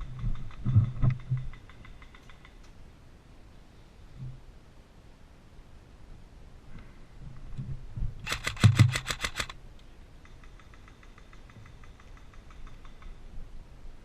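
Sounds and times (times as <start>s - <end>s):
airsoft gun rapid firing: 8.2s - 9.6s.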